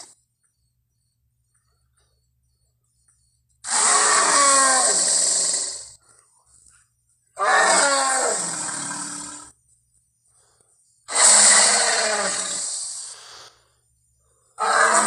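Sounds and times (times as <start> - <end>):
creature roars falling in pitch: 3.7 - 5.2, 7.4 - 9.2, 14.6 - 15.0.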